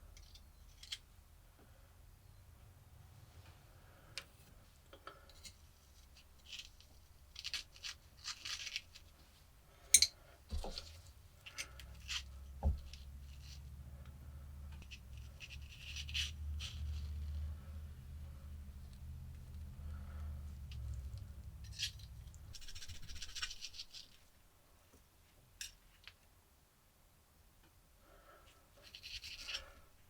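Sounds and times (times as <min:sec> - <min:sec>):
small parts clicking and scraping: 0:00.0 - 0:01.1, 0:04.1 - 0:09.2, 0:09.8 - 0:24.4, 0:28.4 - 0:29.9
low steady hum: 0:08.8 - 0:28.8.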